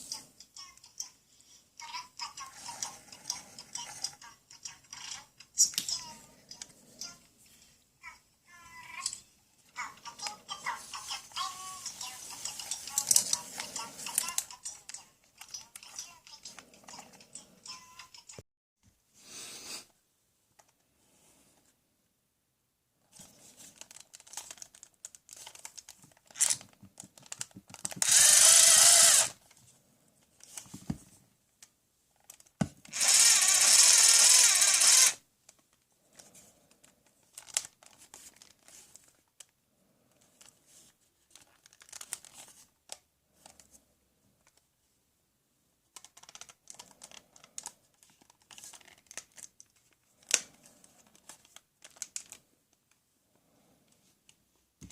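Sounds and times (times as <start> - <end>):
plastic clicking and handling: 12.3 - 17.1, 23.6 - 28.3, 30.2 - 33.3, 35.4 - 39.6, 40.2 - 43.8, 45.9 - 53.0
toy power drill running: 28.0 - 29.4, 32.9 - 35.2.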